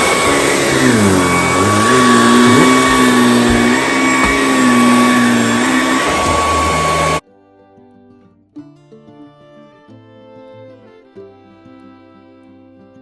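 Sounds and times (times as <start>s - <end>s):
vacuum cleaner running: 0.0s - 7.2s.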